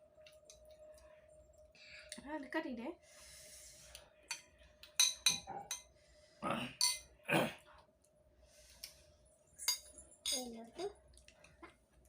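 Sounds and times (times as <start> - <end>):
cutlery clinking against dish: 4.3 - 5.9, 6.8 - 7.1, 9.6 - 10.9.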